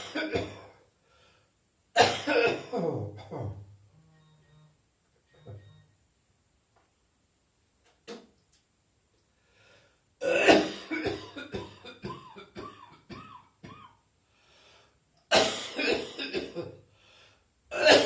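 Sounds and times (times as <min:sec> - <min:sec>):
person coughing hard: 0:00.0 - 0:00.8, 0:02.0 - 0:03.4, 0:10.2 - 0:14.0, 0:15.3 - 0:16.8, 0:17.7 - 0:18.0.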